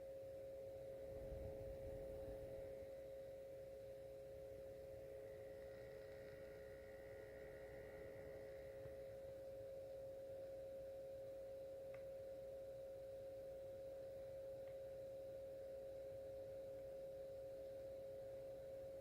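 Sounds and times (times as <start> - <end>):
projector cooling fan hum: 0.0 - 12.3
high whine: 0.4 - 10.8.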